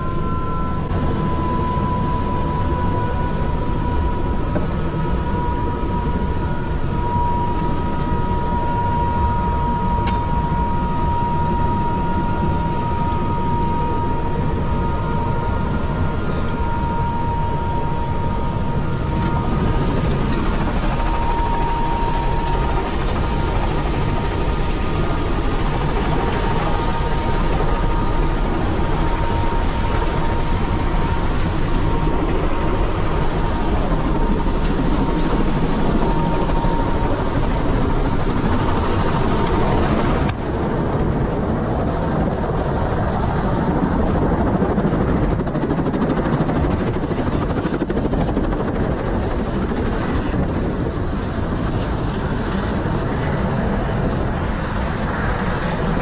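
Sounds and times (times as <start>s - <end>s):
faint high whine: 0.0s - 40.4s
helicopter engine and rotor drone: 0.0s - 56.0s.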